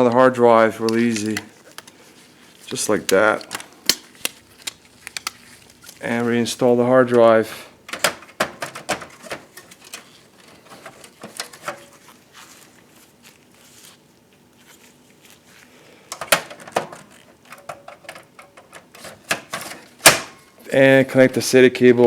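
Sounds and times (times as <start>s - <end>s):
hard drive caddy clicks and knocks: 7.9s - 10.1s.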